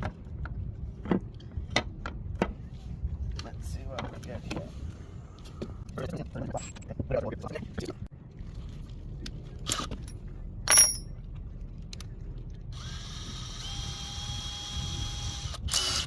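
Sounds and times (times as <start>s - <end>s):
power drill boring into wood: 12.8s - 16.0s.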